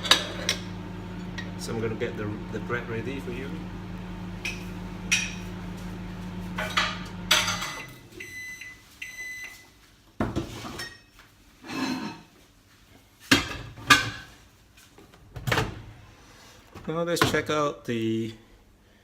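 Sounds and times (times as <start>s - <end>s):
microwave oven humming: 0.0s - 9.6s
dishes knocking and clattering: 6.6s - 8.0s, 13.3s - 14.3s.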